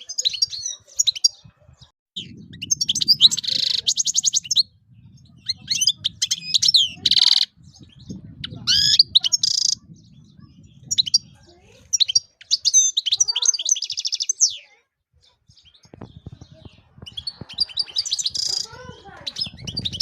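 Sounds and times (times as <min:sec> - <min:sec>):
goldfinch twittering song: 0:00.0 - 0:20.0
low rumble: 0:02.2 - 0:11.9.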